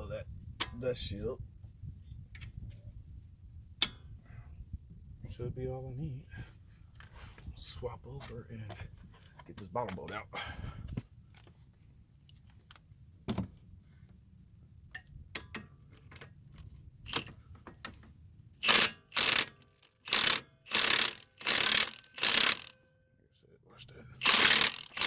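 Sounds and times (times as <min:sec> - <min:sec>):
wrench clicks and knocks: 0:17.1 - 0:17.4, 0:18.6 - 0:22.7, 0:24.2 - 0:25.0
mechanical rattling bursts: 0:18.6 - 0:22.7, 0:24.2 - 0:25.0.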